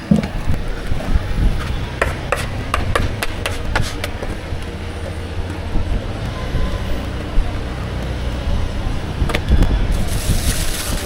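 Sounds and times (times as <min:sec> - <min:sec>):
utensil knocking on hard surface: 0:02.0 - 0:04.2.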